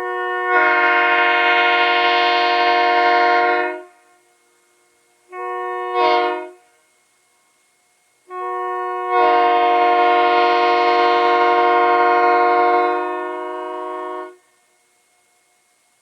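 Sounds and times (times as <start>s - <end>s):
locomotive air horn blasts: 0.0s - 4.2s, 5.3s - 6.9s, 8.3s - 14.5s.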